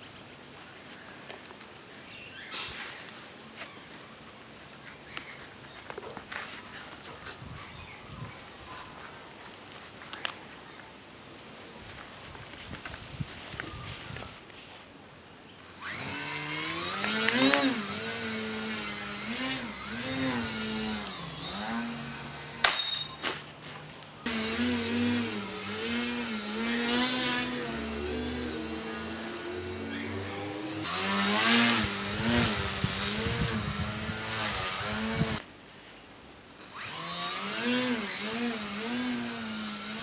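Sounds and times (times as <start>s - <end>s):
model plane motor whine: 15.6s - 23.1s, 24.2s - 35.4s, 36.6s - 40.0s.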